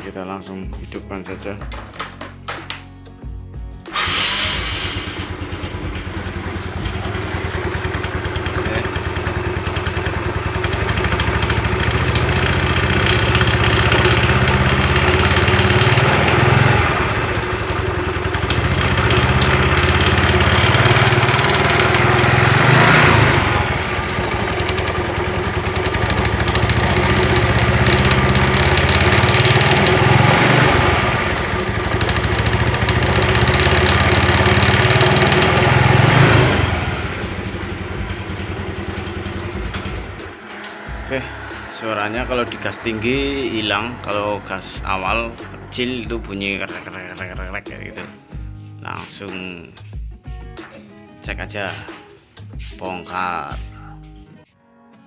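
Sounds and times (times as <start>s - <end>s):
scooter engine idling and revving: 3.9s - 46.6s
rough clicking rattle: 5.1s - 36.5s.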